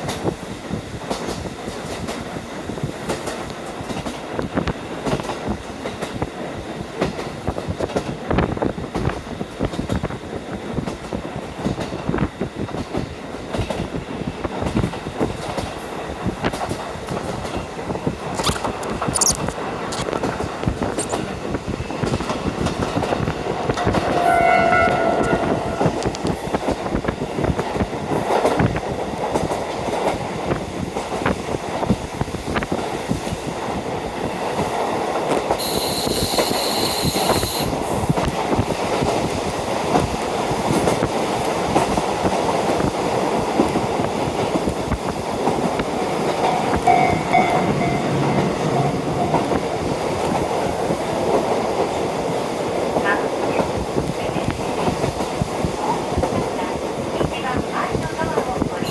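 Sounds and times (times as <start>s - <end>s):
wind rush: 0.0s - 35.6s, 37.7s - 58.9s
train rolling with rail clatter: 0.0s - 58.9s
short horn-like tone: 24.2s - 26.1s, 46.8s - 49.6s
high ringing: 46.6s - 50.1s.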